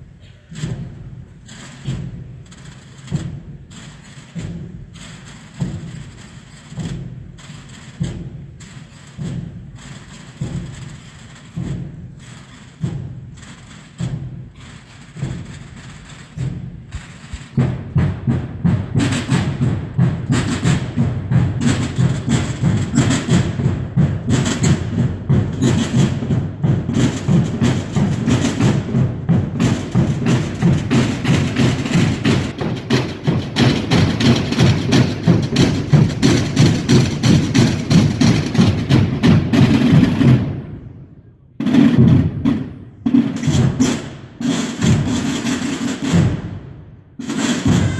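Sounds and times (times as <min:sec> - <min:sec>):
drums beating: 0:00.0 - 0:47.9
many drums rolling: 0:00.0 - 0:47.9.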